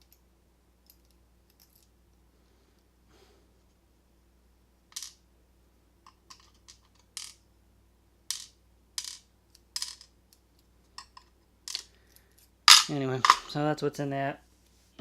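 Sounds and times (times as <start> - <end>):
small metal pins clinking: 0.8 - 1.9, 6.0 - 7.4, 8.3 - 13.5.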